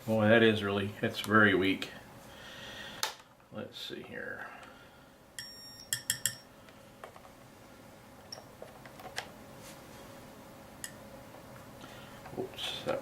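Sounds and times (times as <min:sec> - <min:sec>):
faint high beeps: 0:05.4 - 0:06.5.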